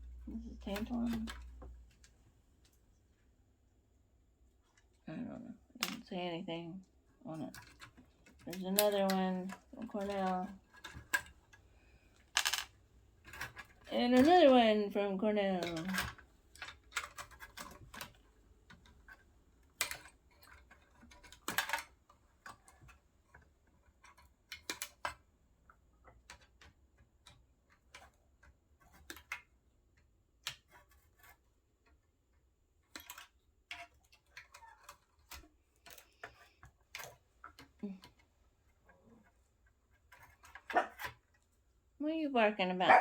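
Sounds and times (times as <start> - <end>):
small clicks and taps of tools: 15.6 - 41.4.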